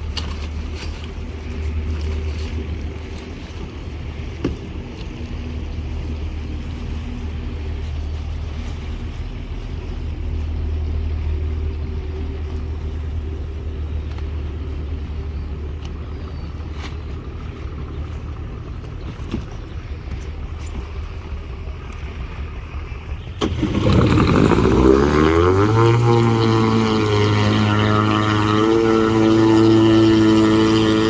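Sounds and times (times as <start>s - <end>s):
faint clicks: 15.6s - 17.4s, 21.8s - 22.1s
motor running: 23.4s - 31.0s.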